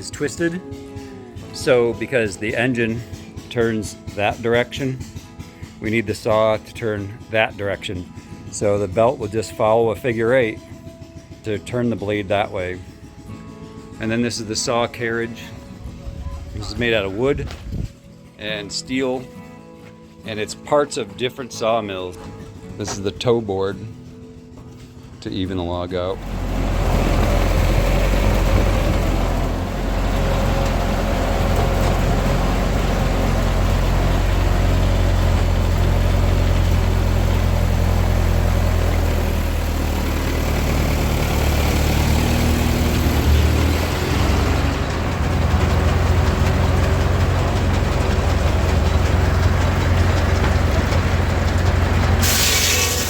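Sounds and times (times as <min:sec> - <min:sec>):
old engine running steadily: 0:00.0 - 0:18.7, 0:21.8 - 0:53.0
brief hiss: 0:52.2 - 0:53.0.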